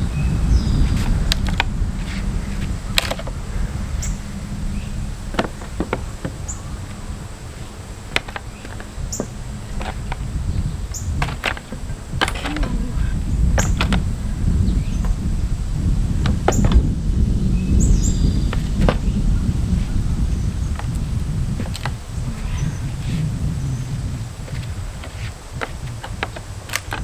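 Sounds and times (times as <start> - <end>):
low rumble: 0.0 - 25.0
wood cracking and knocking: 5.3 - 6.5, 8.1 - 10.2, 11.1 - 14.1, 16.2 - 17.0
nails squeaking: 10.9 - 14.1.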